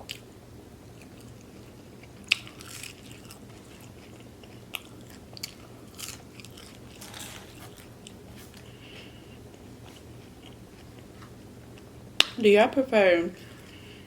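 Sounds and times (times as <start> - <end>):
chewing sounds: 0.9 - 11.2.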